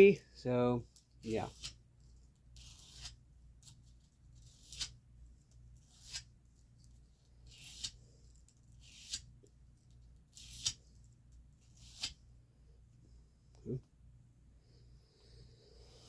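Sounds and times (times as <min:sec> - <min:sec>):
knife scraping on sharpener: 0:02.6 - 0:03.8, 0:04.4 - 0:05.0, 0:07.5 - 0:08.0, 0:08.8 - 0:09.3, 0:10.3 - 0:10.8, 0:11.7 - 0:12.2.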